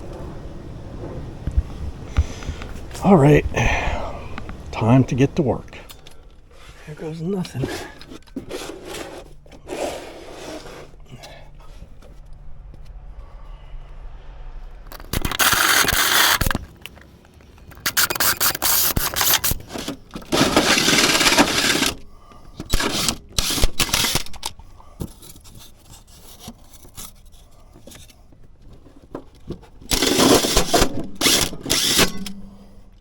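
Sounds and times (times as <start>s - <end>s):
power drill cutting through wood: 15.2s - 16.6s, 17.9s - 19.6s, 29.9s - 32.2s.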